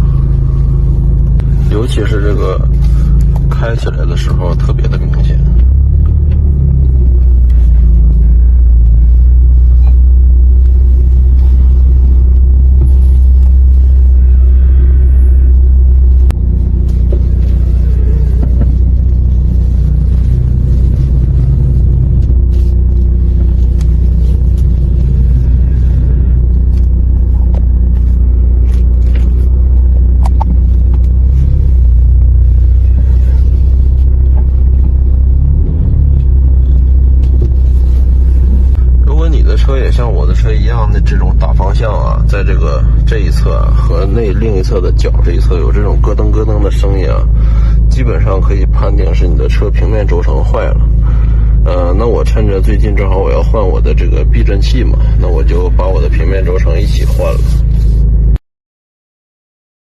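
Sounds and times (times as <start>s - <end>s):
car engine low rumble: 0.0s - 58.4s
suspension creaks and clunks: 4.9s - 8.0s.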